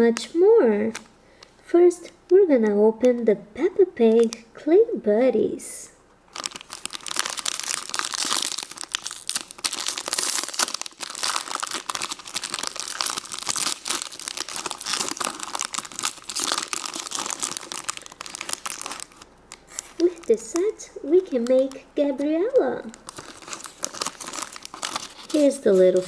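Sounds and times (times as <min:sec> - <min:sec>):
plastic packaging crinkling and tearing: 0:06.3 - 0:26.0.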